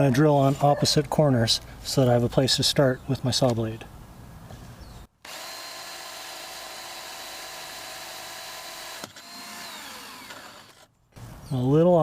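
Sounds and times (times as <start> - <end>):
power drill hole saw whining: 5.2 - 10.9.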